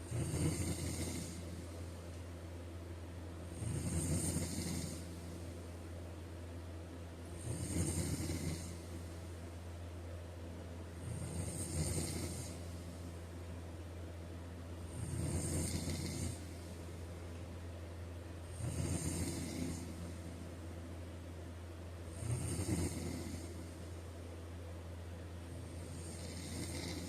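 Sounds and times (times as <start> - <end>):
person snoring: 0.0 - 1.6, 3.5 - 5.1, 7.4 - 8.9, 11.0 - 12.8, 14.9 - 16.6, 18.4 - 20.1, 22.1 - 23.6, 25.6 - 27.0
steady low hum: 0.0 - 27.0.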